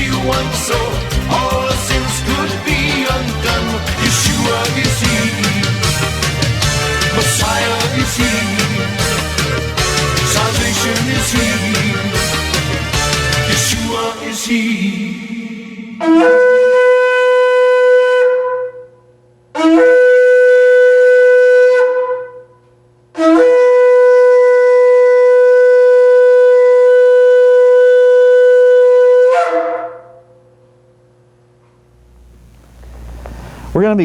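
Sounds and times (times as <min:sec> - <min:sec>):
shofar blasts: 0:16.0 - 0:18.9, 0:19.6 - 0:22.4, 0:23.2 - 0:30.3.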